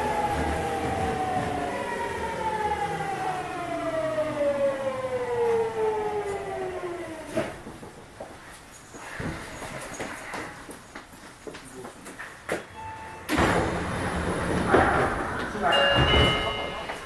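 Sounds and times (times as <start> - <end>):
train clunk: 0.0 - 2.0, 5.5 - 11.1, 13.3 - 17.0
train inverter whine: 0.0 - 8.5.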